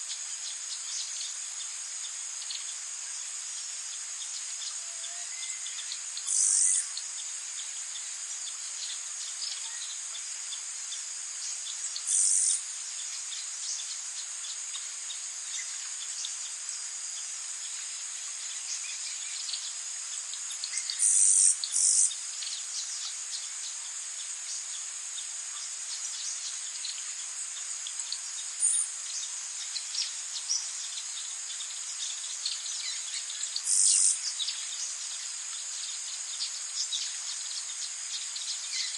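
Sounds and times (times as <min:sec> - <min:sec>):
high-pitched insect drone: 0:00.1 - 0:38.9
faint bird chirps: 0:04.0 - 0:17.7, 0:18.4 - 0:38.9
loud insect buzzes: 0:06.3 - 0:06.9, 0:12.0 - 0:12.6, 0:20.9 - 0:22.2, 0:33.6 - 0:34.2.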